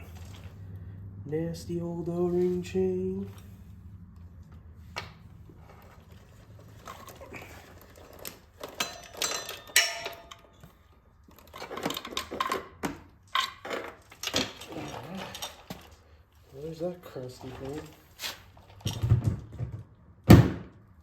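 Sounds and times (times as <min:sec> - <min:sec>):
metal chain clinking and rattling: 0:05.7 - 0:16.1.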